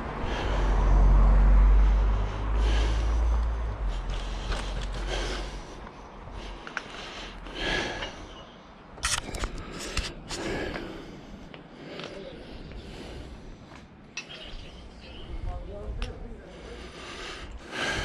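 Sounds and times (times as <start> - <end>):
person breathing hard: 0.0 - 8.8, 9.4 - 14.0, 16.4 - 18.0
low rumble: 0.0 - 11.6.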